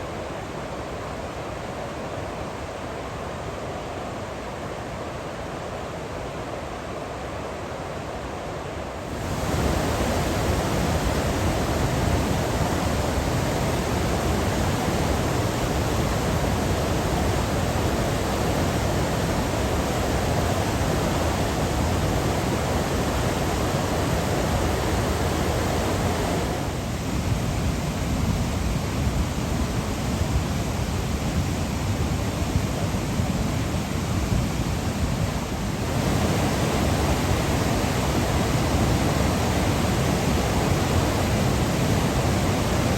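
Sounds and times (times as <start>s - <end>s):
waterfall roaring: 9.1s - 27.3s, 33.3s - 42.9s.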